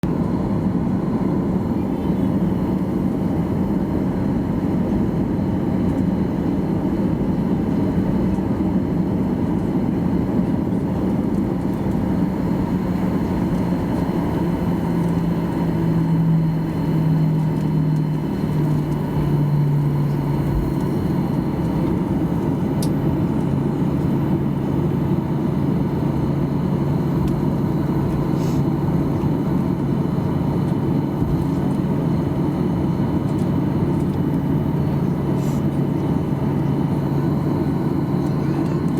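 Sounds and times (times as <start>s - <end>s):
airplane cabin engine rumble: 0.0s - 38.9s.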